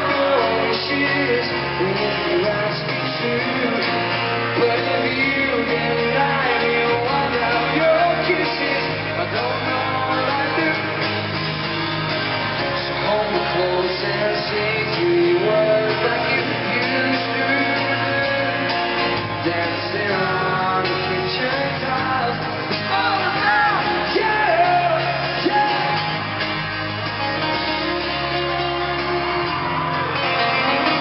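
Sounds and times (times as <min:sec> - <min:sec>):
person singing: 0:00.0 - 0:11.4, 0:12.6 - 0:26.4
pop-rock band playing live: 0:00.0 - 0:31.0.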